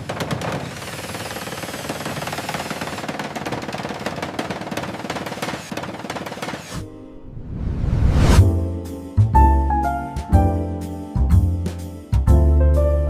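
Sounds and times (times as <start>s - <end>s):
power tool hammering: 0.0s - 6.8s.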